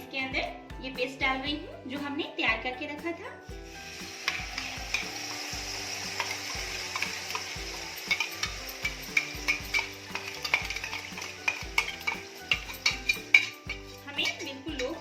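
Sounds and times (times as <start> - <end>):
paste sizzling in a pan: 3.5 - 15.0
spoon scraping a pan: 6.0 - 15.0.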